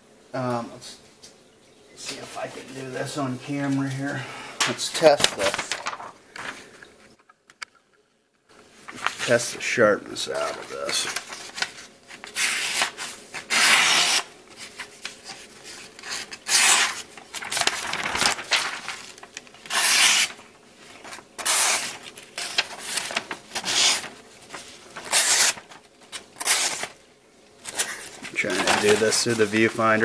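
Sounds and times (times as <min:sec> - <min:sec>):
knife slicing through paper: 0:10.4 - 0:20.4, 0:21.0 - 0:27.0.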